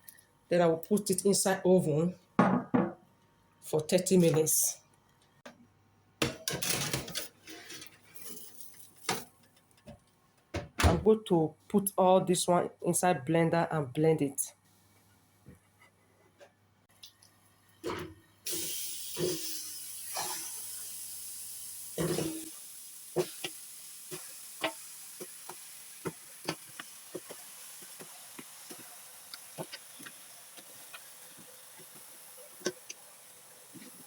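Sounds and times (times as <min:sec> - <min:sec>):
sauce sizzling in a hot pot: 0:18.4 - 0:34.0.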